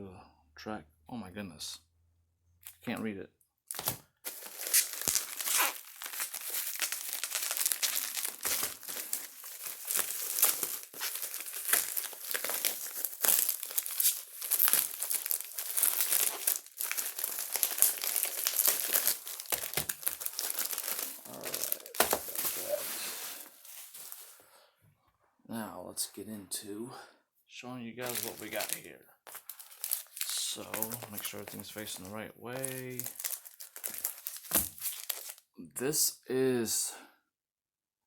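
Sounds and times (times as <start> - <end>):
plastic packaging crinkling and tearing: 3.7 - 24.4, 28.0 - 35.5.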